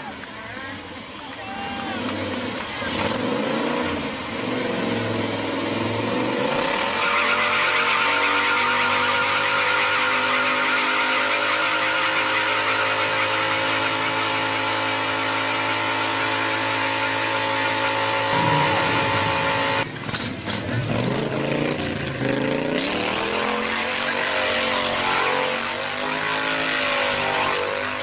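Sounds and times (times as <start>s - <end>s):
vehicle engine running: 12.1s - 22.8s.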